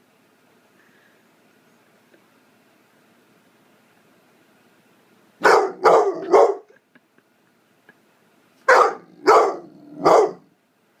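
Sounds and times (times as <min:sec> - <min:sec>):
dog barking: 0:05.4 - 0:06.7, 0:08.7 - 0:10.5.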